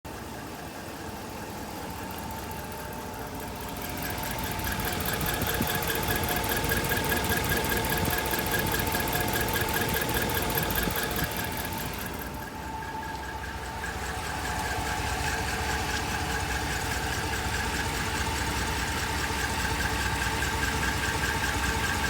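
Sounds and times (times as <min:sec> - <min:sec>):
engine running: 0:00.1 - 0:22.0.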